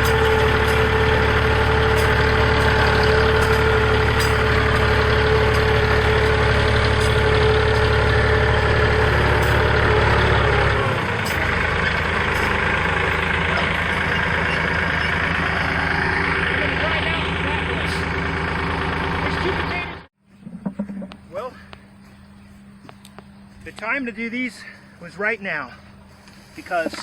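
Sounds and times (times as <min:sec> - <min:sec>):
tractor engine running: 0:00.0 - 0:27.0.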